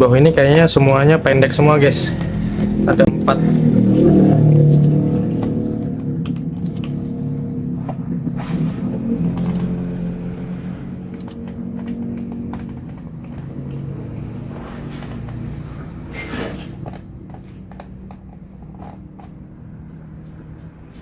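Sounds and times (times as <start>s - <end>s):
vehicle engine humming: 0.0s - 21.0s
screwdriver clicking on screws: 11.1s - 13.9s.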